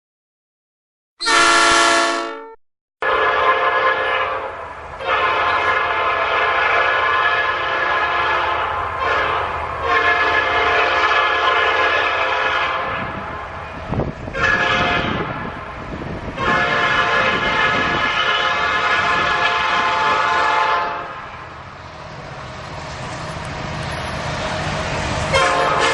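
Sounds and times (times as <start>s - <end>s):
locomotive air horn chord: 1.2s - 13.3s, 14.3s - 15.6s, 16.3s - 21.2s, 25.3s - 25.9s.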